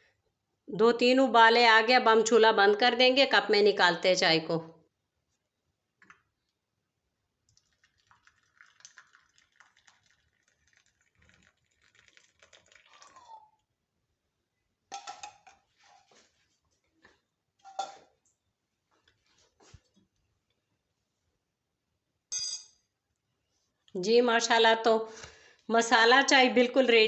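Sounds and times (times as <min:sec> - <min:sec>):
tea trickling into cups: 0:07.4 - 0:13.7
kitchenware clinking: 0:14.9 - 0:15.6, 0:17.6 - 0:18.1.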